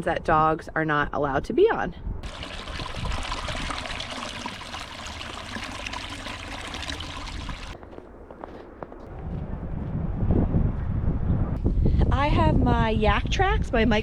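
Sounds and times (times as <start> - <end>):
rushing trickling water: 2.2 - 7.8
low rumble: 7.7 - 12.8.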